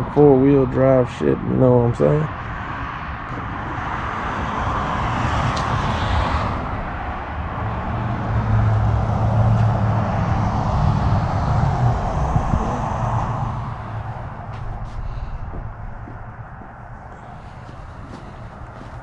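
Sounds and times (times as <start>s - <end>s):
tyre and road noise: 0.0s - 19.0s
vehicle engine running: 8.2s - 19.0s.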